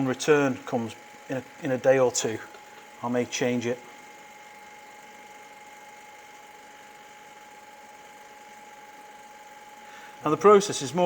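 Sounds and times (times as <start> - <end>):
machine hum with thin whine: 0.0 - 11.0.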